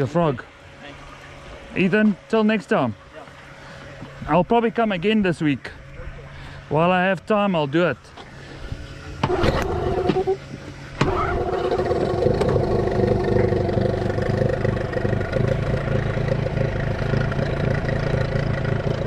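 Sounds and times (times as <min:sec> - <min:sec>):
outboard motor starting and running: 0:00.0 - 0:19.0.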